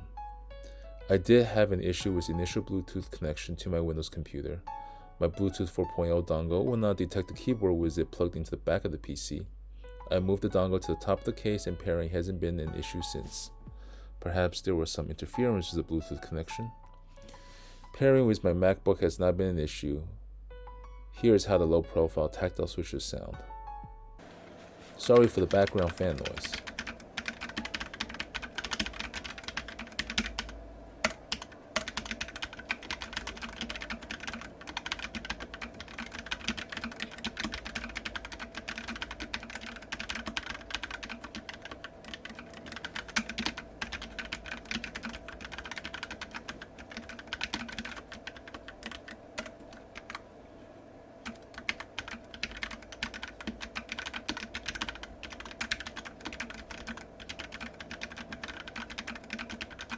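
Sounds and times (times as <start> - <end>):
computer fan humming: 24.2 - 59.9
fast keyboard typing: 25.0 - 50.2, 51.2 - 59.9.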